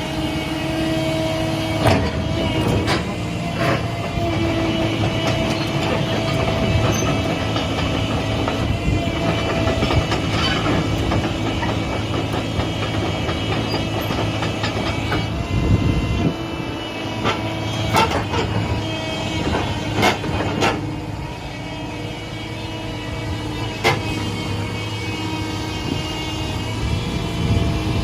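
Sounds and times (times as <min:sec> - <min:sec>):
excavator diesel engine droning: 0:00.0 - 0:28.0
rough mechanical clatter: 0:01.8 - 0:15.4, 0:17.2 - 0:20.9.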